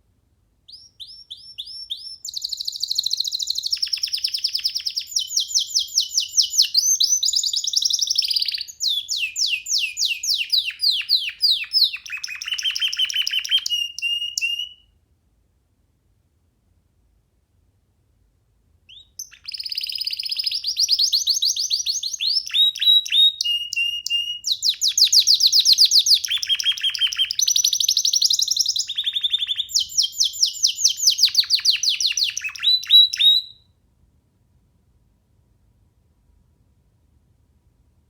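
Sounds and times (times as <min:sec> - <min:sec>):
canary singing trills: 0:00.7 - 0:14.8, 0:18.9 - 0:33.6.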